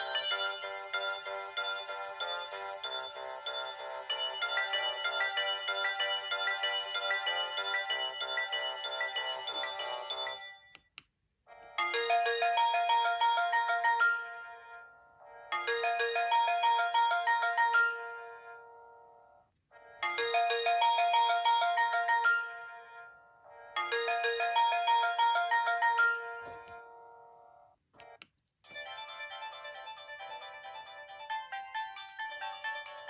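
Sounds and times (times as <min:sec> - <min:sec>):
phone ringtone: 0:00.0 - 0:10.8, 0:11.8 - 0:19.2, 0:20.0 - 0:27.6, 0:28.7 - 0:33.0.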